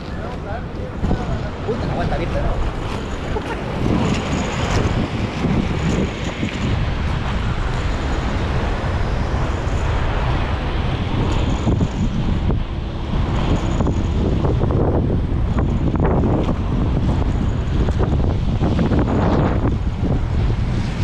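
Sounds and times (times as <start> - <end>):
wind buffeting microphone: 0.0 - 21.0.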